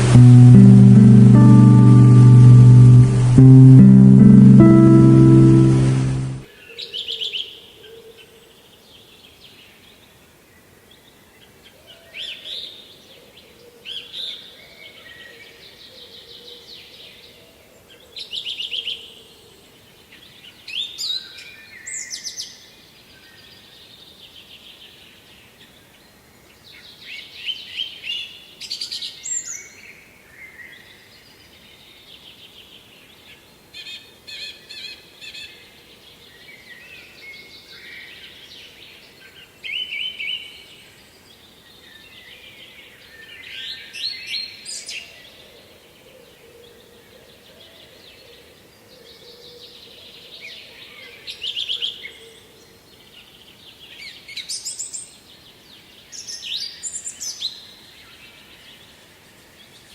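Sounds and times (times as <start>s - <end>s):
faint background hiss: 0.0s - 6.4s.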